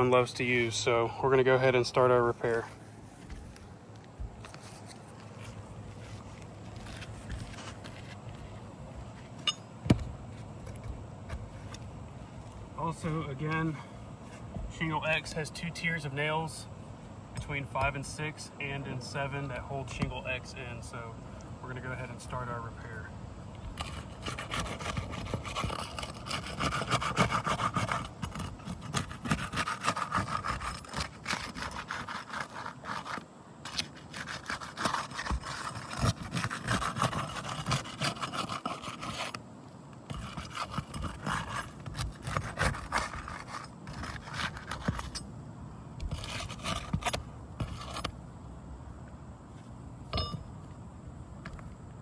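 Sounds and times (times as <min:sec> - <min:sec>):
bar scraping shingles: 0:23.8 - 0:39.4, 0:40.1 - 0:45.3, 0:46.0 - 0:48.2.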